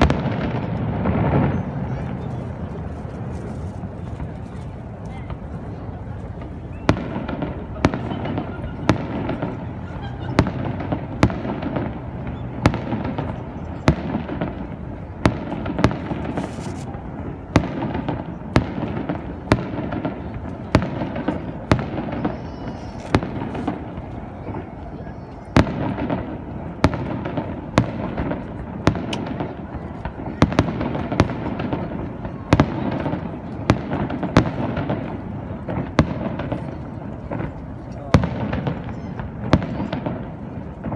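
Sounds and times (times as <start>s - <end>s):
fireworks banging: 0.0s - 40.9s
people talking: 1.4s - 10.8s, 20.0s - 26.5s, 29.2s - 34.1s, 35.1s - 40.7s.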